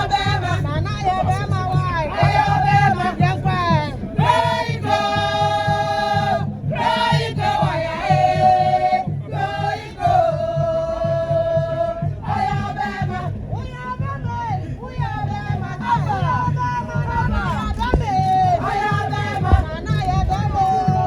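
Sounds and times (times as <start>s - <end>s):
choir-like voices singing: 0.0s - 21.0s
steady bass beat: 10.2s - 21.0s.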